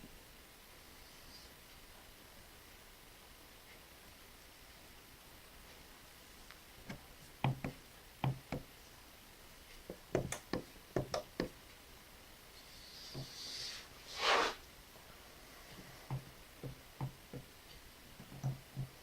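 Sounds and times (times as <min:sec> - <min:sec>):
short rushing swish: 0:14.1 - 0:14.6.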